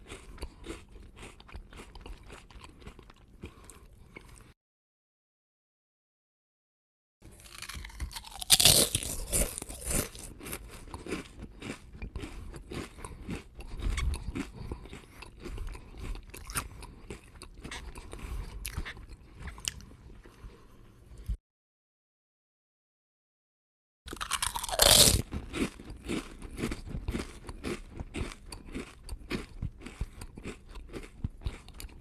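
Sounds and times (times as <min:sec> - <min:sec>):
potato chips crunching: 0:00.0 - 0:04.4, 0:07.3 - 0:19.8, 0:24.1 - 0:32.0.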